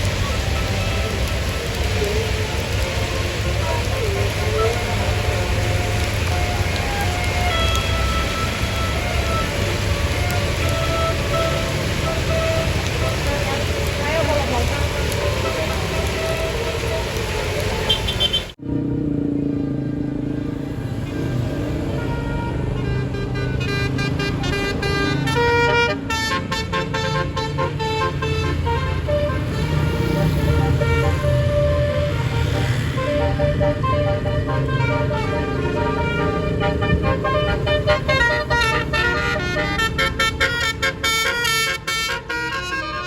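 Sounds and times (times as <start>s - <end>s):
bus engine rumbling: 0.0s - 43.0s
traffic noise: 0.0s - 43.0s.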